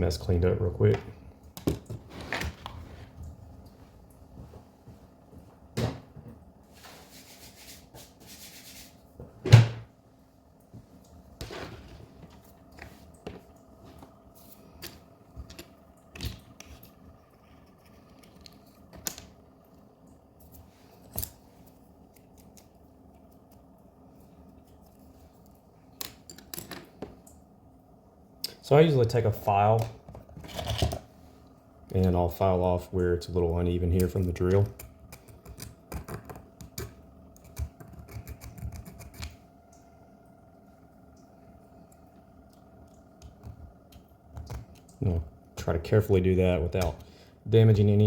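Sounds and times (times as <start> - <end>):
clicks and knocks of small parts: 26.0 - 27.2.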